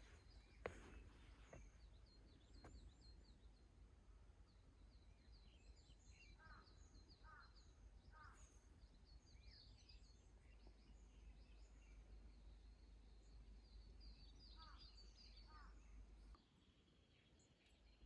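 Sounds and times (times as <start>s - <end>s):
lower louder bird calls: 0.0s - 18.0s
small birds chirping: 0.0s - 18.0s.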